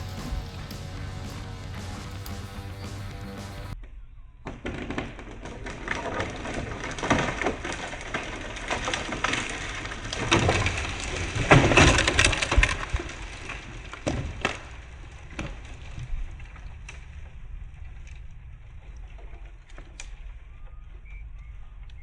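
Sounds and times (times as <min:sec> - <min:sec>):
tree falling with wood cracking: 0:04.4 - 0:21.2
branches snapping and breaking: 0:04.6 - 0:17.3.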